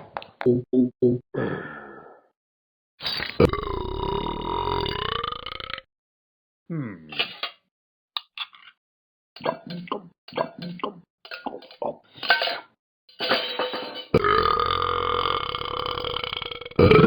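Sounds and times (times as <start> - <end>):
person burping: 0.4 - 1.6, 3.4 - 5.9, 6.7 - 7.3, 14.2 - 17.0.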